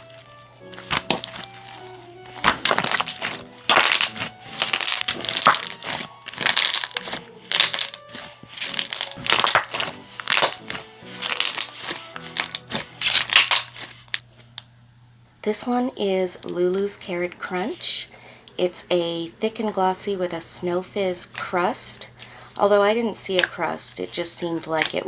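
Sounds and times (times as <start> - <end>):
soft background music: 0.0 - 14.2
slime popping and crackling: 0.8 - 14.5, 16.3 - 17.8, 22.7 - 25.0.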